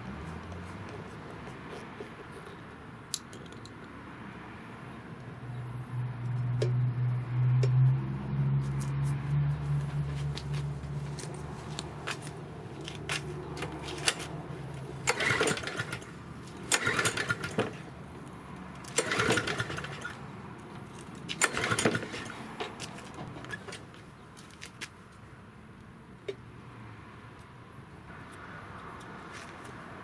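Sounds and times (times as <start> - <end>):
lawn mower engine running: 13.1 - 18.2, 18.8 - 23.9.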